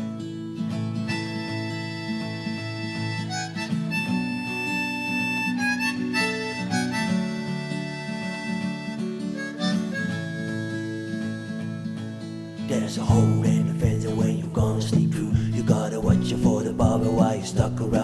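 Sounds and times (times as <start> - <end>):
strummed acoustic guitar: 0.0 - 18.0
harmonica long notes: 1.0 - 14.7.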